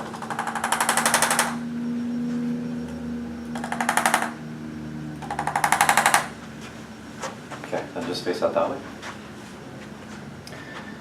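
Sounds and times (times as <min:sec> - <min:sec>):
adjusting instrument rapid clicks: 0:00.0 - 0:01.6, 0:03.6 - 0:04.4, 0:05.2 - 0:06.3.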